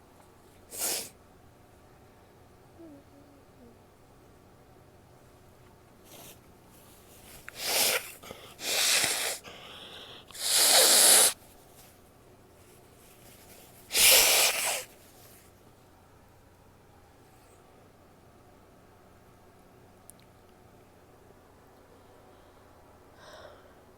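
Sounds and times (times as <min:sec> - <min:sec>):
quiet breathing: 0:06.0 - 0:10.4, 0:21.9 - 0:23.9
woman sneezing: 0:13.9 - 0:14.9.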